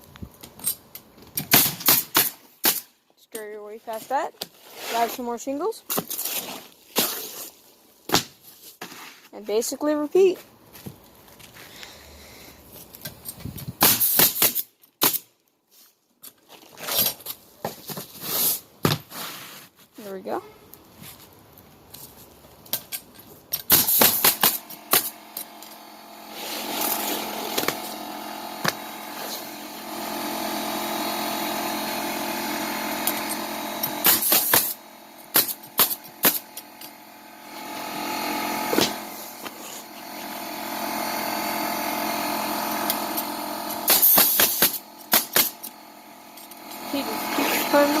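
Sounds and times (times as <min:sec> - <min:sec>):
nail gun firing: 0:01.4 - 0:02.9, 0:13.8 - 0:15.3, 0:23.6 - 0:25.8, 0:26.5 - 0:37.8, 0:38.6 - 0:39.6, 0:42.4 - 0:45.8
steady machine hum: 0:23.7 - 0:48.0.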